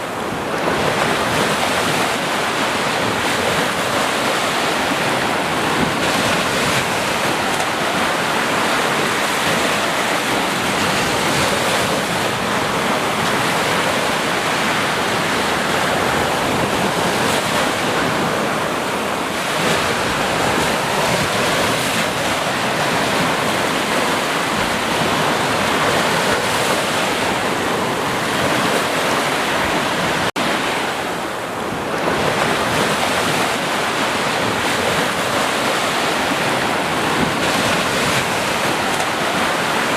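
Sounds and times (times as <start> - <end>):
sea waves washing in: 0.0 - 39.9.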